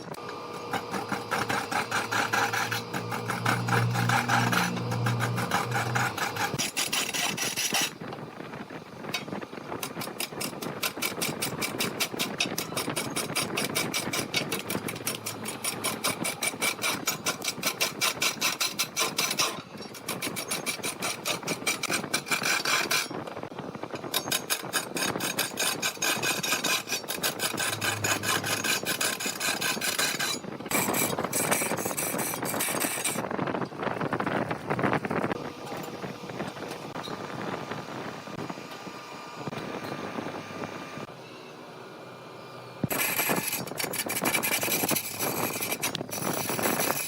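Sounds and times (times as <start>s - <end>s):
lathe tool scraping wood: 0.0s - 8.0s, 10.4s - 23.2s, 24.0s - 33.2s, 42.9s - 47.0s.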